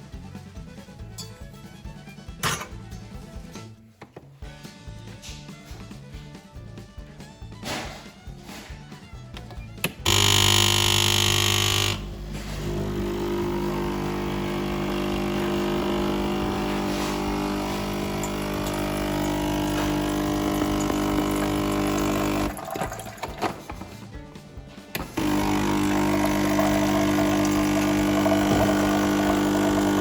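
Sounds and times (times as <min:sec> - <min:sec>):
capsule machine pump buzzing: 0:10.0 - 0:23.4, 0:25.0 - 0:30.0.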